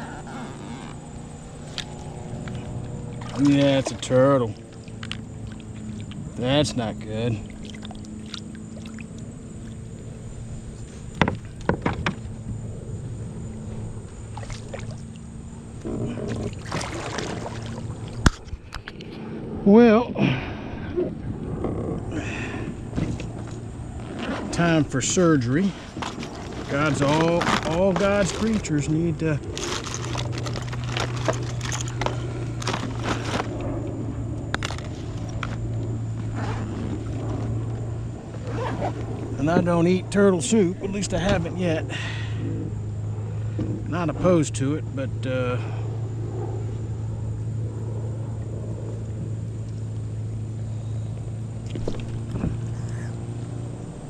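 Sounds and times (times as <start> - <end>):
steady low hum: 0.0 - 54.0
clicks taps and scraping of gear: 4.7 - 6.2, 25.9 - 28.7, 29.4 - 33.7, 34.4 - 37.8, 51.6 - 53.0.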